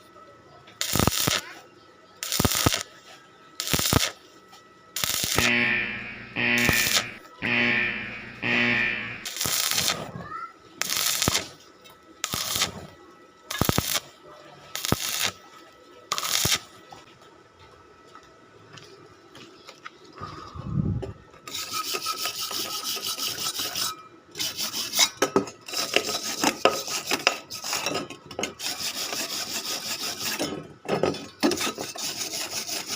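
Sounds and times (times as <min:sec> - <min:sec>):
arc welding crackling: 0:00.8 - 0:01.6, 0:02.2 - 0:02.9, 0:03.6 - 0:04.2, 0:05.0 - 0:15.5, 0:16.1 - 0:16.8.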